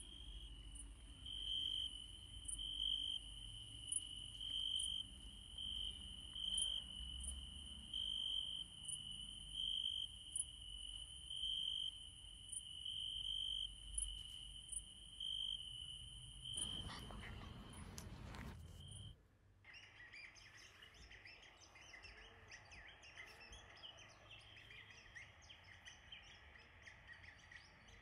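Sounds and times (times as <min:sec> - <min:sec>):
insects trilling: 0:00.0 - 0:19.2
small birds chirping: 0:00.0 - 0:28.0.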